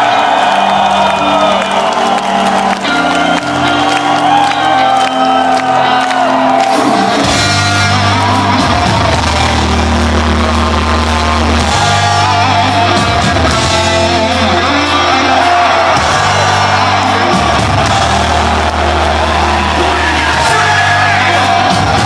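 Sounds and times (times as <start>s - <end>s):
bass: 0.0s - 22.0s
distorted guitars: 0.0s - 22.0s
drums: 6.4s - 22.0s
vocals: 12.6s - 17.9s, 19.4s - 22.0s.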